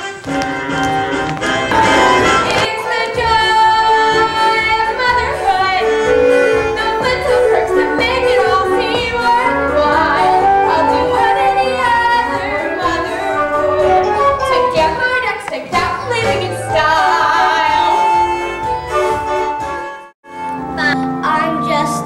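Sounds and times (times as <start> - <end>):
instrumental accompaniment with bass: 0.0 - 22.0
woman singing: 1.8 - 13.6, 14.3 - 18.2.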